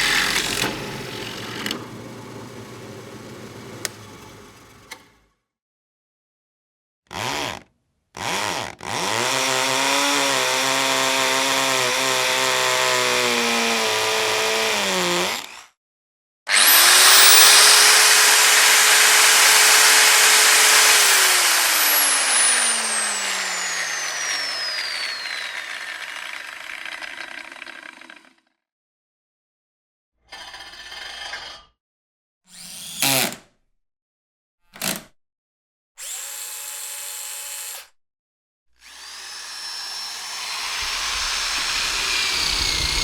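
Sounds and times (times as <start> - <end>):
power drill whining: 0.0 - 5.0, 16.5 - 28.3, 36.0 - 36.8, 38.8 - 43.0.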